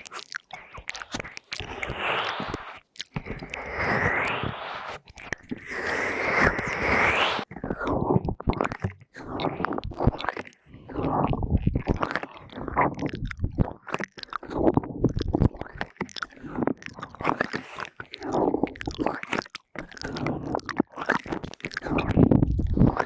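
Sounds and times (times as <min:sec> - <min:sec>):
wet mouth clicks and smacks: 0:00.0 - 0:04.0, 0:04.9 - 0:05.7, 0:07.5 - 0:23.0.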